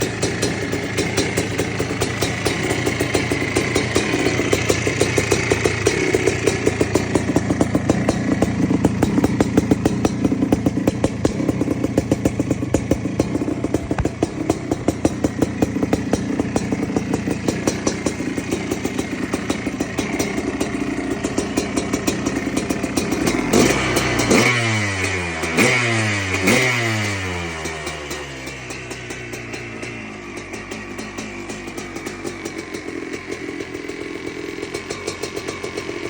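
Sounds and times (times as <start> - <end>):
motorcycle engine idling and revving: 0.0 - 36.0.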